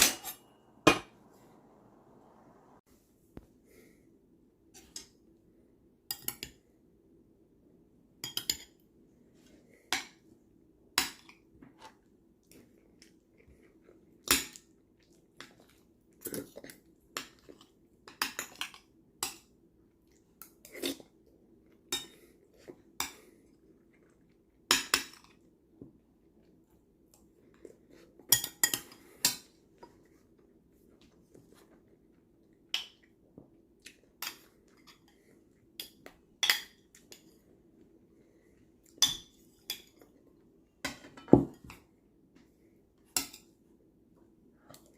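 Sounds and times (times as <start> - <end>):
utensils clinking on cookware: 0.0 - 1.2
faint low hum: 0.0 - 44.9.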